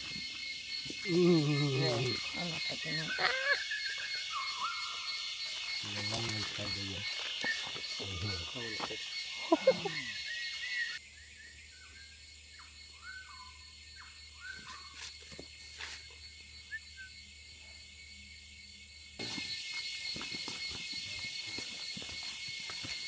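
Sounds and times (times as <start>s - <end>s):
insect drone: 0.0s - 23.0s
bird chirps: 0.2s - 15.2s.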